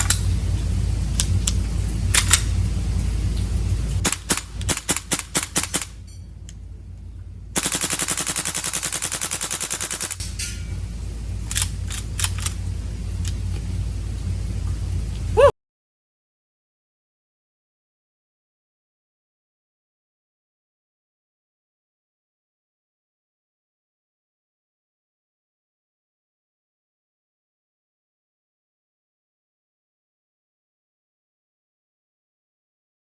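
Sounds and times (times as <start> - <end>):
steady low rumble: 0.0 - 15.5
airsoft rifle firing: 2.1 - 2.6, 4.0 - 6.0, 7.6 - 10.4.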